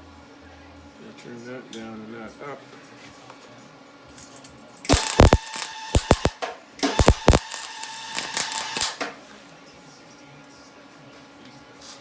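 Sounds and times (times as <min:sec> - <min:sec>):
steady hum: 0:04.9 - 0:06.3, 0:06.9 - 0:08.9
welder arc crackling: 0:04.9 - 0:09.0.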